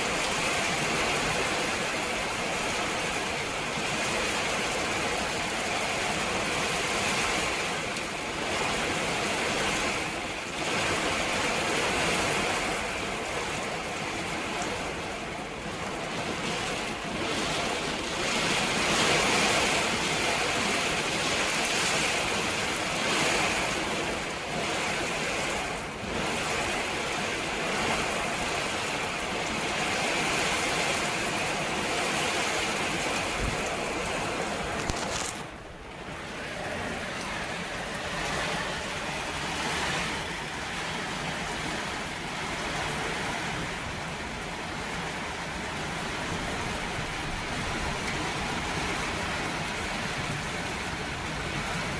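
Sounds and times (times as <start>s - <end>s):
heavy rain pouring: 0.0s - 51.9s.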